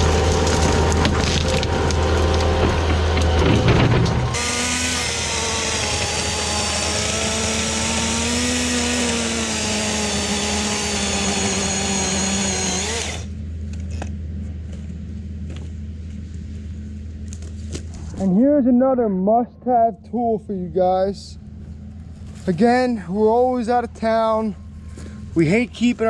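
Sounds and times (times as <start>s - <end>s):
electric pole saw motor whine: 0.0s - 13.4s
low steady hum: 0.0s - 26.0s.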